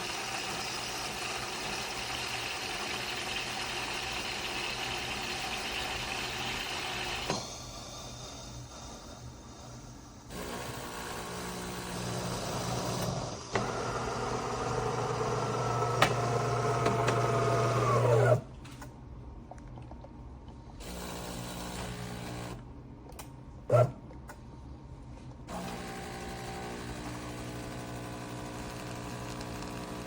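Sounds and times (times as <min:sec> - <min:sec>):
espresso machine humming: 0:00.0 - 0:07.5, 0:10.3 - 0:18.4, 0:20.8 - 0:22.7, 0:25.5 - 0:30.0.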